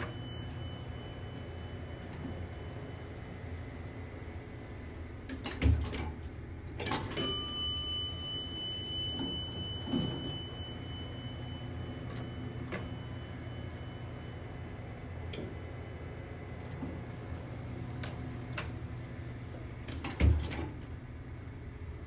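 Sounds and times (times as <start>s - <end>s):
elevator chime ding: 0.0s - 3.4s, 7.1s - 15.4s.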